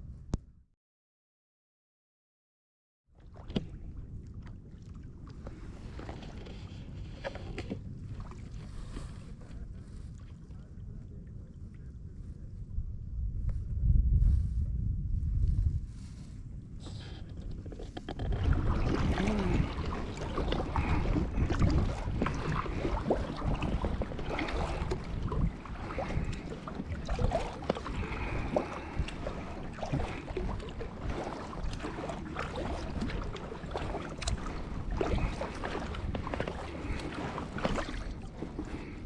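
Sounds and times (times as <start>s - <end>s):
water trickling along hull: 3.1s - 12.5s, 15.9s - 39.0s
paddle splashing: 3.2s - 10.6s, 16.8s - 39.0s.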